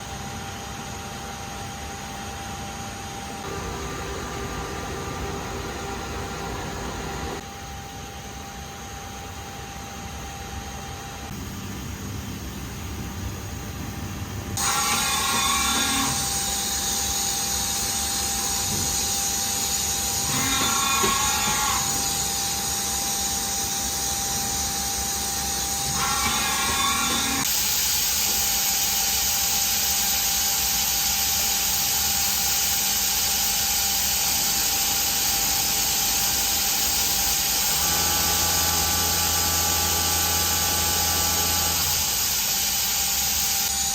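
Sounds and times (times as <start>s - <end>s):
machine high-pitched whine and hiss: 0.0s - 43.9s.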